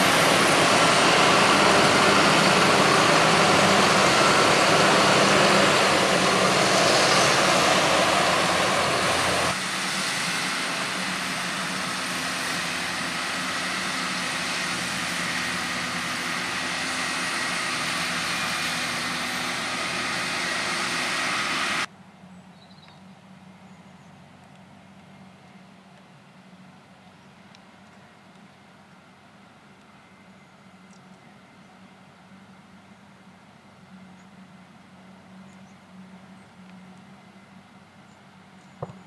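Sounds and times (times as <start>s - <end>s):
heavy farm machinery engines: 0.0s - 21.9s.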